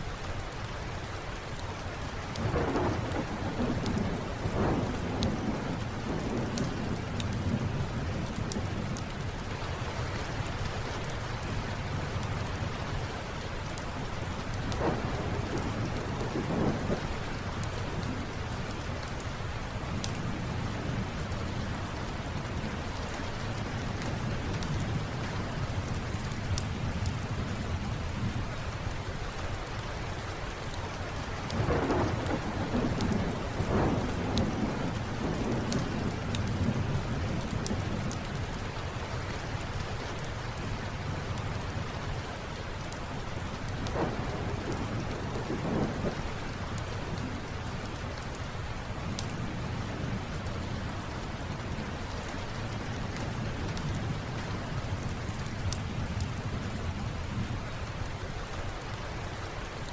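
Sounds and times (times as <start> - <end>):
steady rain: 0.0 - 59.9
wood fire crackling: 0.4 - 57.0
low thunder rolling: 2.4 - 9.2, 14.7 - 18.5, 31.5 - 38.3, 43.5 - 47.9.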